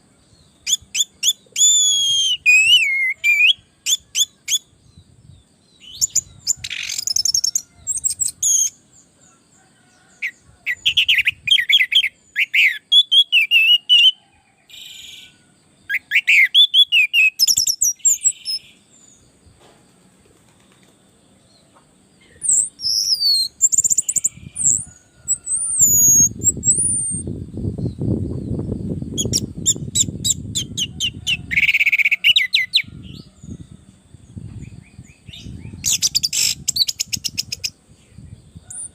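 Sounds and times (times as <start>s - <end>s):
thrush singing trills and whistles: 0.0s - 8.9s, 10.2s - 19.3s, 22.2s - 38.9s.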